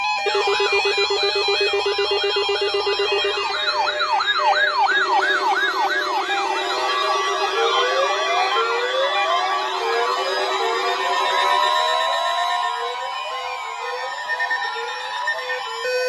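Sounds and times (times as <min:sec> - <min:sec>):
electronic alarm sirens sweeping: 0:00.0 - 0:16.0.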